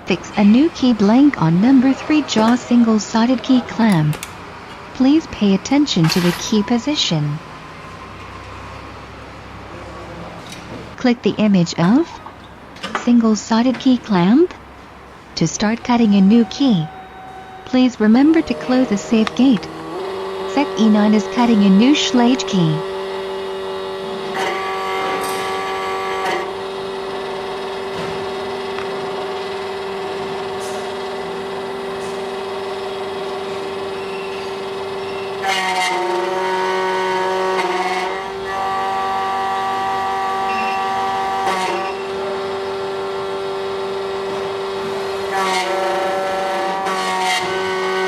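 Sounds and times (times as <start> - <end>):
key cutting machine humming: 17.1 - 48.0.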